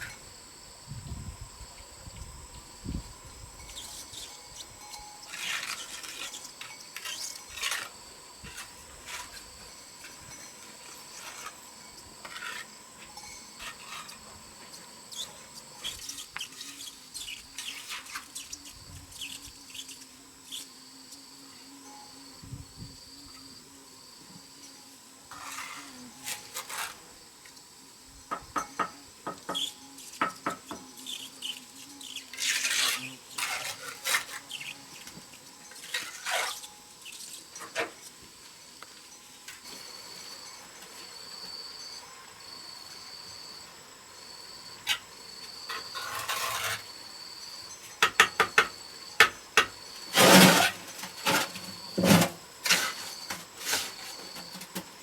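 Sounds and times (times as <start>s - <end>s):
high insect drone: 0.0s - 55.0s
tool scraping and clinking on brick: 4.8s - 9.4s, 12.2s - 14.3s, 35.6s - 36.8s, 45.7s - 47.0s, 47.8s - 54.9s.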